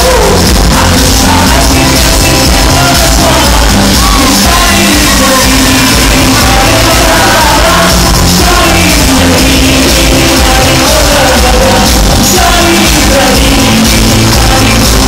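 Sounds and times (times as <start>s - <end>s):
person shouting: 0.0s - 0.5s
loud rock music with singing: 0.0s - 15.0s.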